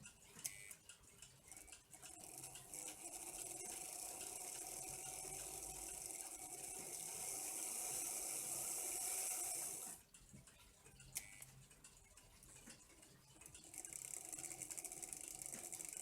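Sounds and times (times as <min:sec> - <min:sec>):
model locomotive motor whirring: 0:00.0 - 0:10.1, 0:13.3 - 0:16.0.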